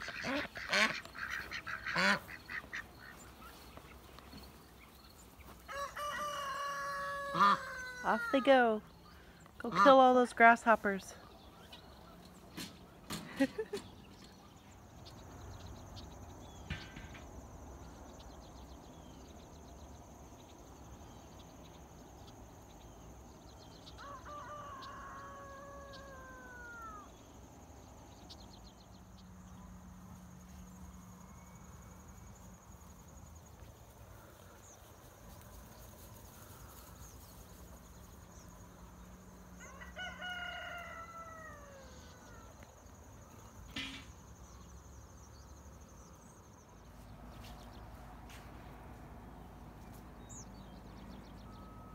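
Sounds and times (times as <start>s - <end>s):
rooster crowing: 5.6s - 8.5s, 23.8s - 27.2s, 39.5s - 42.6s
high insect drone: 15.1s - 47.1s.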